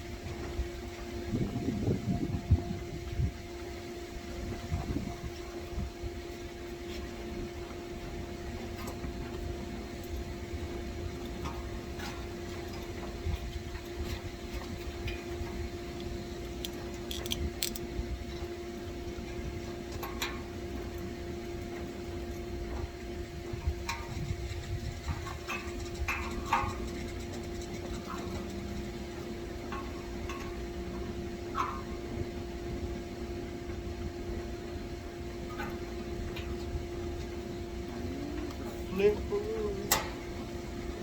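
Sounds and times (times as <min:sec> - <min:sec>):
mechanical hum: 0:00.0 - 0:41.0
hand tool clicks and taps: 0:16.6 - 0:17.8.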